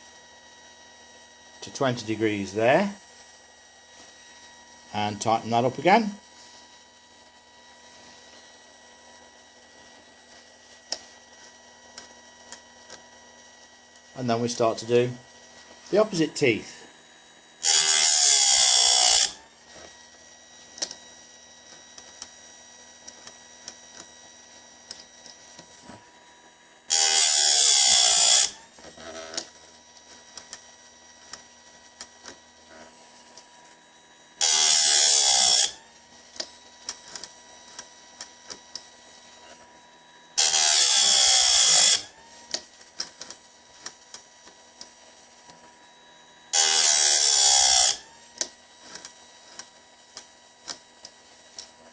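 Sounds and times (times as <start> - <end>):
grinding wheel against chain: 17.6 - 19.4, 26.9 - 32.9, 34.4 - 35.8, 40.4 - 44.9, 46.5 - 51.8.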